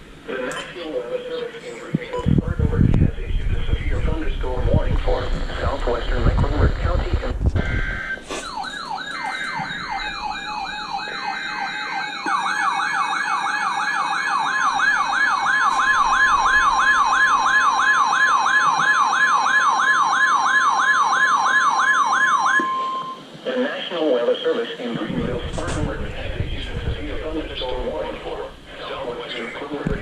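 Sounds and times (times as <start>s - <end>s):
siren-like tone sweeping down: 7.6s - 23.2s
steady long alarm tone: 7.6s - 23.2s.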